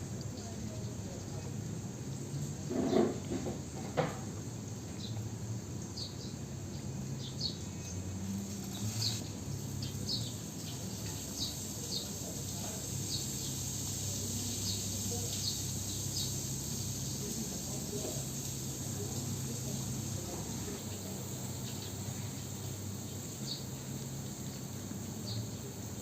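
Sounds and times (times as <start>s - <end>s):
steady hiss and hum: 0.0s - 26.0s
small bird chirping: 5.8s - 25.6s.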